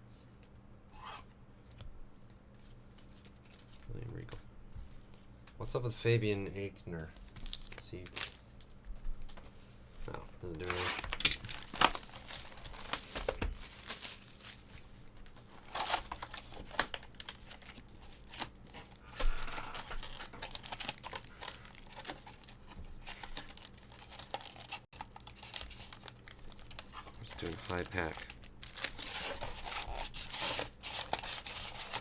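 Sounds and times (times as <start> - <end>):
wrappers crinkling and tearing: 7.0 - 8.8, 10.1 - 32.0
cards rustling: 10.1 - 32.0.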